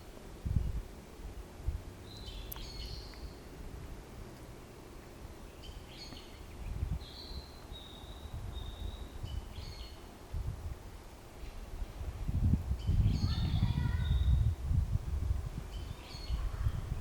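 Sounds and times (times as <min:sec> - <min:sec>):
forest birds singing: 0:02.0 - 0:03.6, 0:04.6 - 0:10.2, 0:12.4 - 0:14.6, 0:15.6 - 0:17.0.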